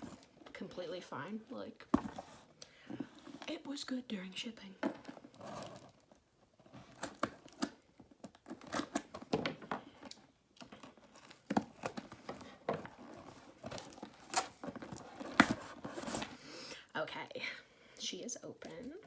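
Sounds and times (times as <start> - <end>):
tape and packaging tearing: 13.8 - 16.3.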